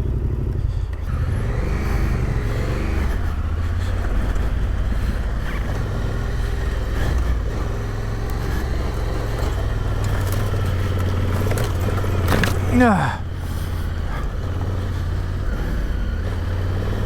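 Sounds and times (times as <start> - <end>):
motorcycle engine running: 0.0 - 17.0
motorcycle knocking over ground: 8.9 - 12.9.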